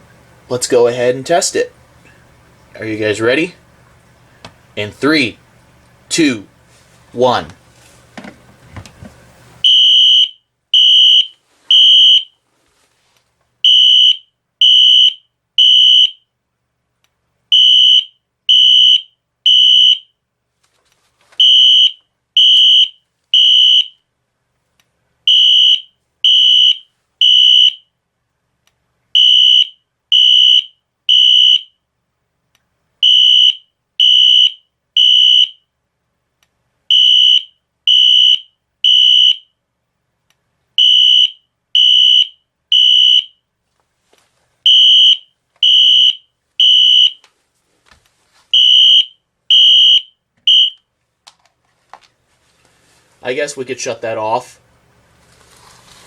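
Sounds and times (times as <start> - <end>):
high-pitched alarm beeps: 9.6 - 12.3, 21.4 - 23.9, 33.0 - 35.6, 36.9 - 39.4, 40.8 - 43.3, 44.7 - 47.2, 48.6 - 50.8.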